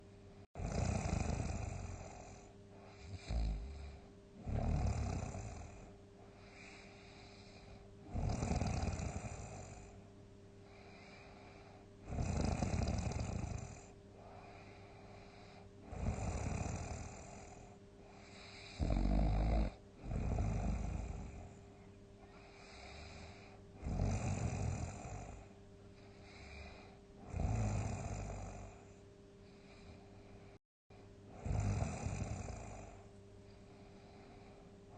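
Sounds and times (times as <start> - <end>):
faint steady hum: 0.0 - 34.9
person snoring loudly: 0.6 - 10.0, 12.0 - 17.7, 18.3 - 21.6, 22.4 - 25.5, 26.3 - 28.8, 31.3 - 33.0.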